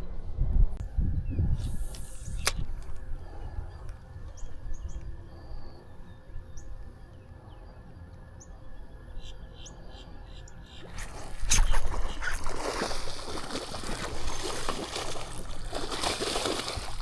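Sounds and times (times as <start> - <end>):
wind rumble: 0.0 - 7.0
sharp click: 1.6 - 3.0.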